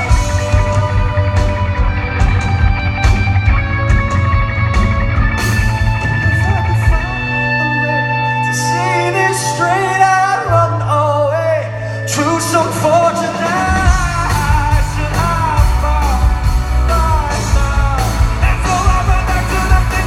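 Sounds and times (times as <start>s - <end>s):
held bass notes: 0.0s - 20.0s
rock band playing live: 0.0s - 20.0s
man singing with vibrato: 6.3s - 20.0s.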